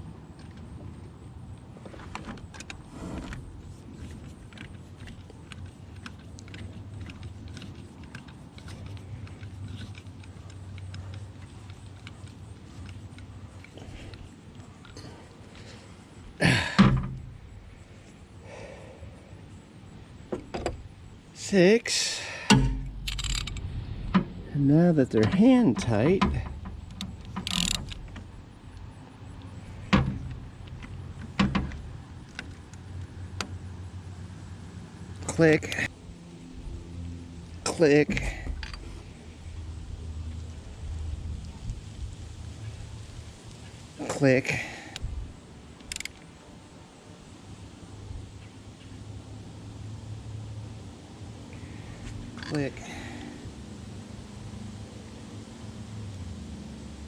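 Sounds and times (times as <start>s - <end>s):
low steady hum: 0.0s - 57.0s
hand tools clunking: 16.4s - 17.4s, 21.9s - 28.4s.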